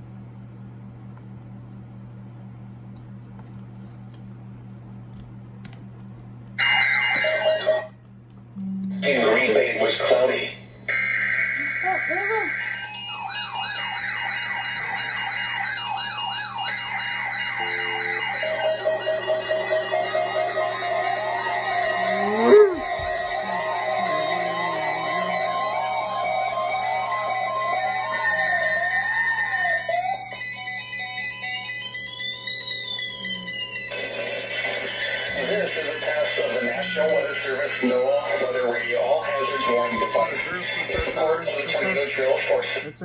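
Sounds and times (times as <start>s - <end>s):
electronic siren wailing: 6.6s - 8.0s, 8.6s - 41.4s
steady alarm tones: 6.6s - 43.0s
gliding tone: 17.2s - 29.0s.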